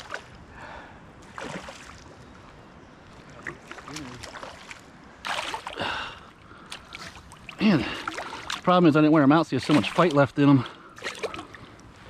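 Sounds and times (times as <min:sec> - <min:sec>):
water splashing and sloshing: 0:00.0 - 0:00.5, 0:01.1 - 0:12.0.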